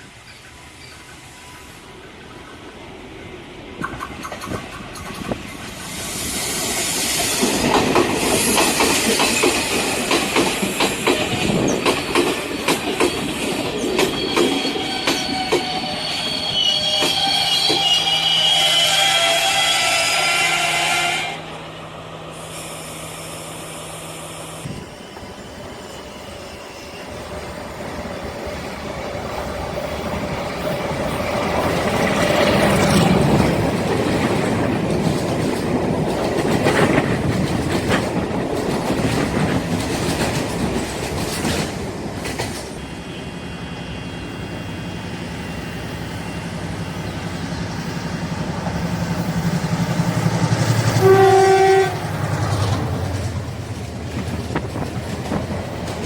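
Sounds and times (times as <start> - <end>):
train wheels on rails: 0.0 - 56.0
clatter over rail joints: 32.0 - 42.7.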